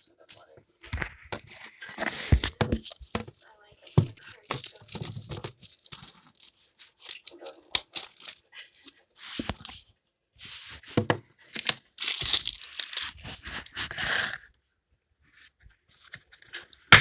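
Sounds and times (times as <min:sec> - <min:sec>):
paper tearing and crumpling: 0:00.3 - 0:09.8.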